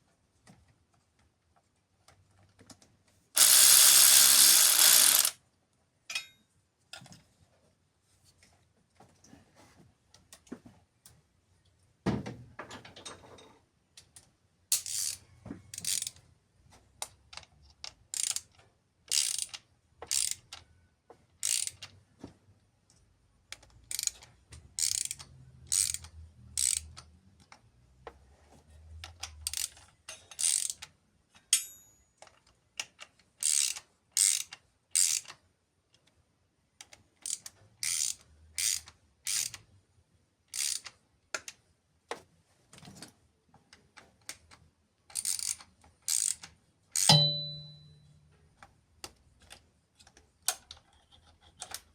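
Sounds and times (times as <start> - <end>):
ratchet wrench clicking: 3.4 - 5.4, 14.8 - 15.2, 15.8 - 16.2, 18.1 - 18.5, 19.1 - 20.5, 21.4 - 21.9, 23.9 - 27.0, 29.4 - 29.8, 30.4 - 30.9, 33.4 - 35.4, 37.2 - 39.6, 40.5 - 40.9, 45.1 - 47.5.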